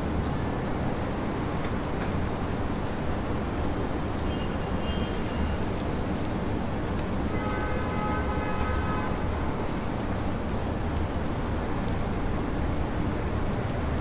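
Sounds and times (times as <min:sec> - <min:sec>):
city traffic rumble: 0:00.0 - 0:14.0
steady rain: 0:00.0 - 0:14.0.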